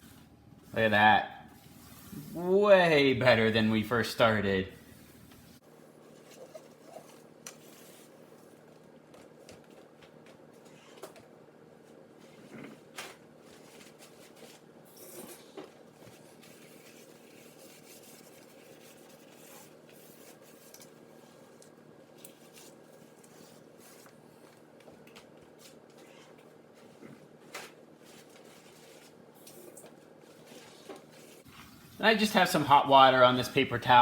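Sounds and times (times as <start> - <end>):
paper towel wiping glass: 1.6 - 3.6, 16.0 - 21.5.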